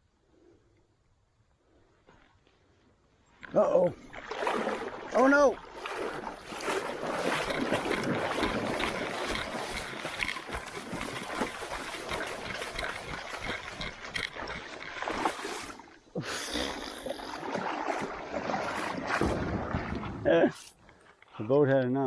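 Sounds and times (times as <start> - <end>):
river water splashing and gurgling: 3.4 - 20.8
knocks and bumps on kayak: 17.6 - 20.3.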